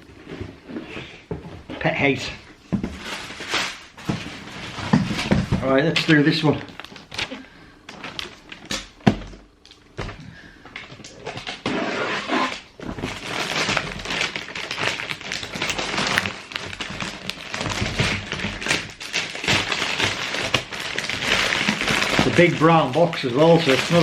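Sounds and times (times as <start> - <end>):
cardboard rustling and scraping: 2.7 - 8.7, 11.2 - 18.8, 19.5 - 24.0.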